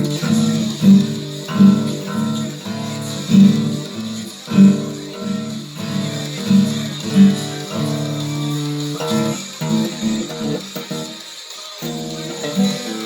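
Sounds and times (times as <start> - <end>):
guitar playing chords: 0.0 - 13.0.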